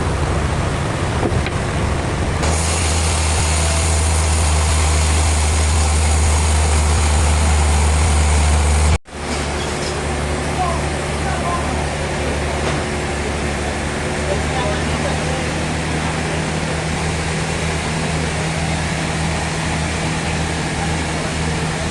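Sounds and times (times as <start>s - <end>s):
heavy machinery humming: 0.0s - 21.9s
wide hiss: 2.4s - 9.0s.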